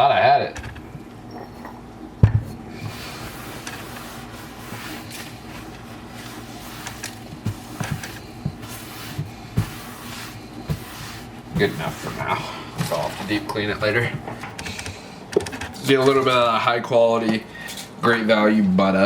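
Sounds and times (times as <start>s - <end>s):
rubbing and sweeping: 2.7s - 14.2s.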